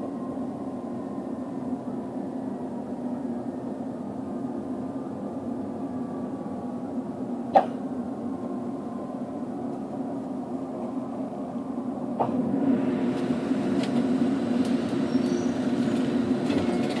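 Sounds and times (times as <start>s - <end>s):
subway train running hum: 0.0s - 17.0s
rail clicks: 12.1s - 17.0s
rail clack: 12.2s - 17.0s.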